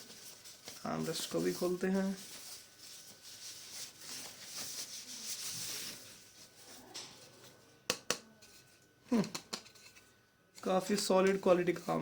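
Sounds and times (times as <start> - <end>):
packaging rustling: 0.0 - 7.4.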